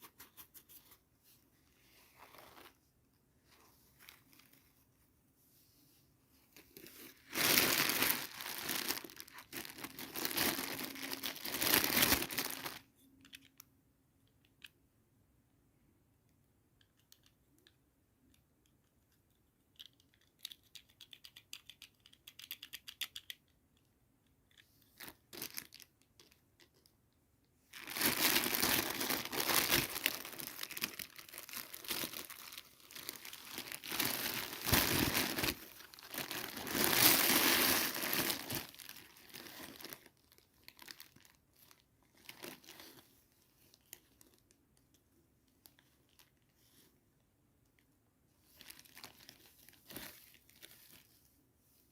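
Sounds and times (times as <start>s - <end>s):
packaging crinkling and tearing: 6.8s - 12.8s, 27.7s - 43.0s.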